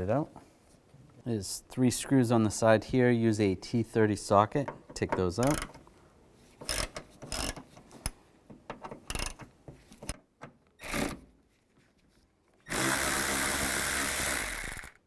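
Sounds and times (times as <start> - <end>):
ratchet clicking: 6.6 - 7.6, 12.7 - 15.0
power tool whirring: 12.7 - 15.0.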